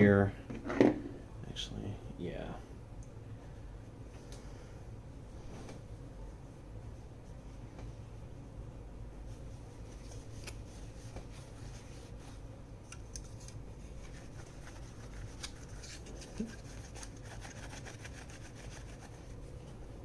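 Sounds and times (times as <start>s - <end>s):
brush scrubbing plastic fan blades: 9.2s - 20.0s.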